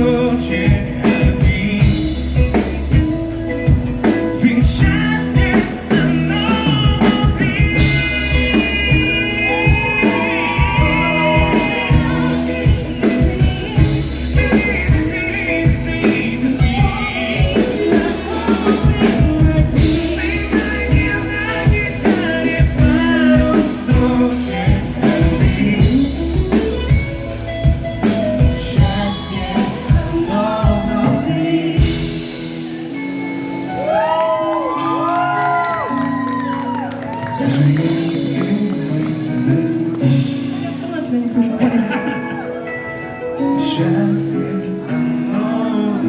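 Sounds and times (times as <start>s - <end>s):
drum beat: 0.0s - 32.8s
bass: 0.0s - 46.0s
person singing: 0.0s - 46.0s.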